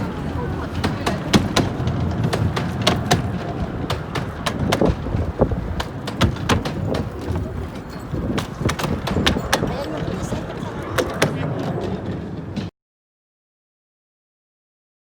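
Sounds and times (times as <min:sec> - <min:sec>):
miniature train running: 0:00.0 - 0:12.7
wind buffeting microphone: 0:00.0 - 0:12.7
sharp irregular clicks and knocks: 0:00.7 - 0:09.8.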